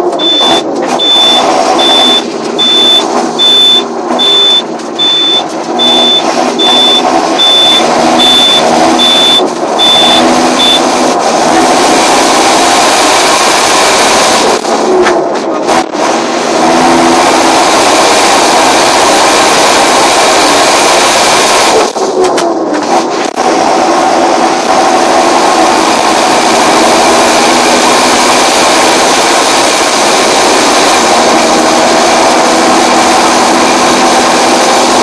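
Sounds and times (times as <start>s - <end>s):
tractor diesel engine under load: 0.0s - 35.0s
backup alarm beeping: 0.1s - 10.9s.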